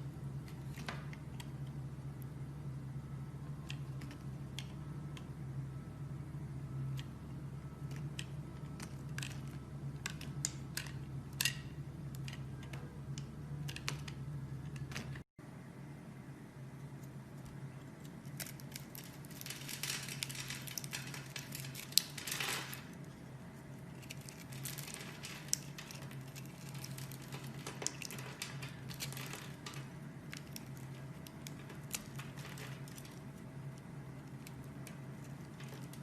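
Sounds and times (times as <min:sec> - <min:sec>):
low steady hum: 0:00.0 - 0:36.0
soft crackling and squishing: 0:16.7 - 0:36.0.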